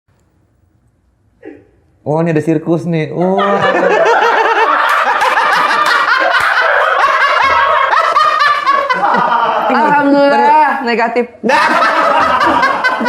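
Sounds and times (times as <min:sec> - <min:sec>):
audience laughing: 0:03.2 - 0:10.4, 0:11.5 - 0:13.0.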